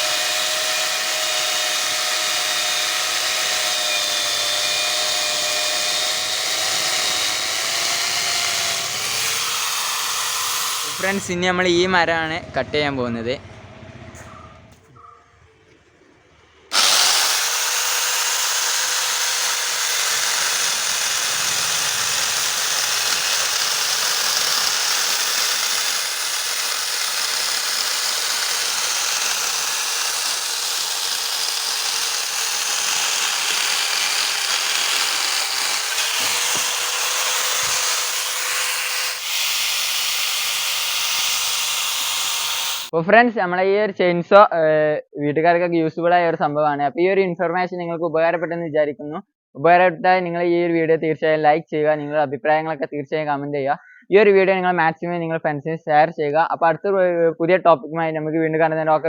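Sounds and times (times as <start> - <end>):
chainsaw cutting wood: 0.0 - 11.3, 16.7 - 42.9.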